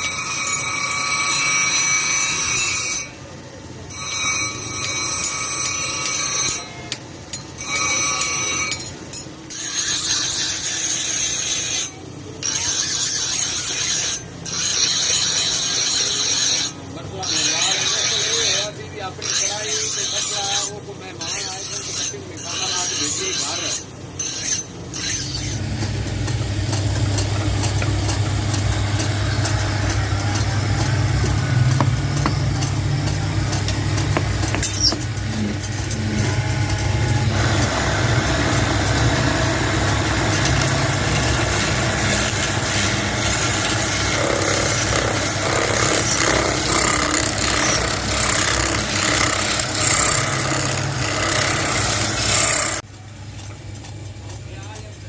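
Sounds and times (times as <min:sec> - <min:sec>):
motor-driven machine humming: 0:23.9 - 0:52.8.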